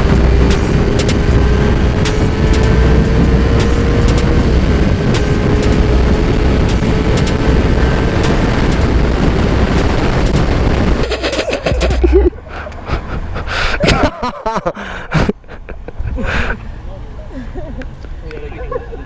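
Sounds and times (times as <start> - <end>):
motorcycle engine drone: 0.0 - 14.1
wind rumble on microphone: 0.0 - 14.1.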